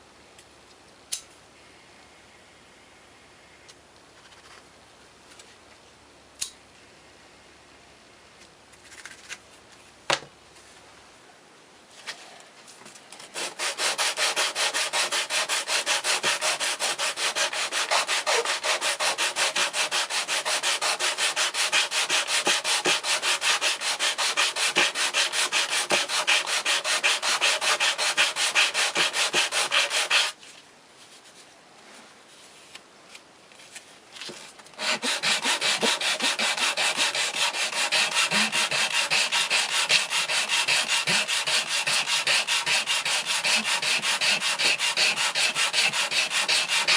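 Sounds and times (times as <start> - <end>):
leather sanding strokes: 13.4 - 30.4, 34.8 - 46.9.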